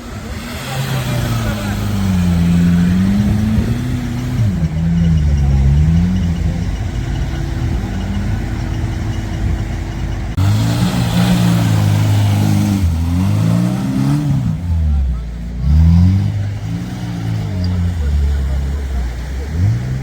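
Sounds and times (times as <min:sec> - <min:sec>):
brighter engine revving: 0:00.0 - 0:20.0
off-road engines revving: 0:00.0 - 0:20.0.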